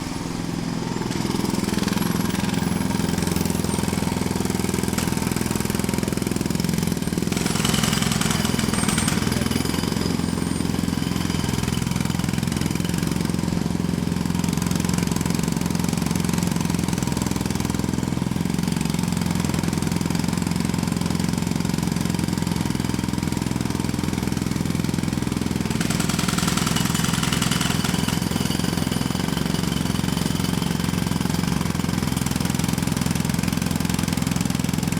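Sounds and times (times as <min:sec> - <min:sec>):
jackhammer hammering: 0:00.0 - 0:34.9.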